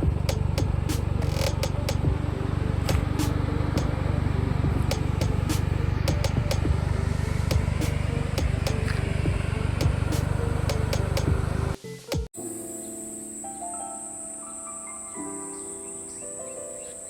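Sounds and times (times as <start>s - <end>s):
car exhaust running steadily: 0.0s - 11.8s
sharp clicks: 0.2s - 2.1s, 4.9s - 6.7s.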